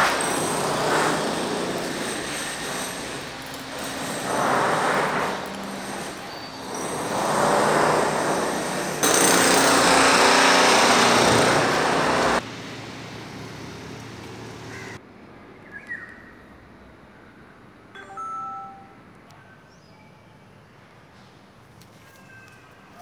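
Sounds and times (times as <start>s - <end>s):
hammer drill drilling: 0.1s - 12.4s.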